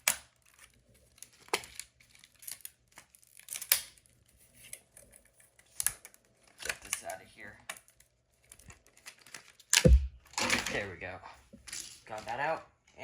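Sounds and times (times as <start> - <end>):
packaging rustling and tearing: 0.0 - 7.0, 7.8 - 9.8.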